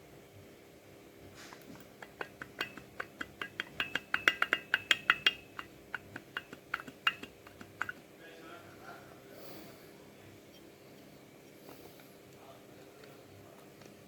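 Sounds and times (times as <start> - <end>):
faint steady hum: 0.0 - 14.0
water pump metallic clicking: 1.6 - 8.1.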